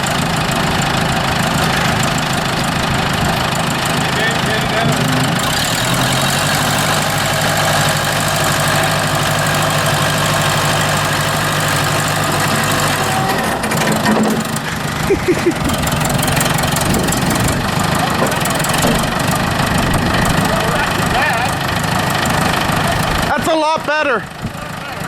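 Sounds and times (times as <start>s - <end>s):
engine running: 0.0s - 25.0s.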